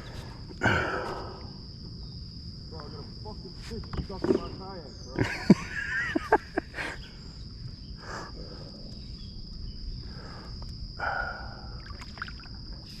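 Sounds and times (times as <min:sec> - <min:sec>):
insects droning: 0:00.0 - 0:13.0
wind rumble on microphone: 0:06.4 - 0:13.0.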